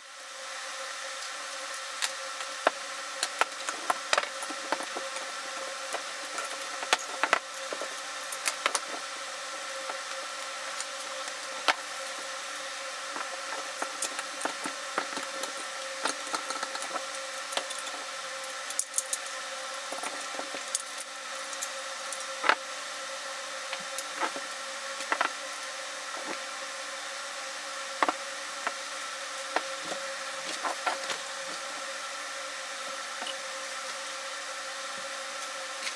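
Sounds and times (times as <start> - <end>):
electrical hum: 0.0 - 35.9.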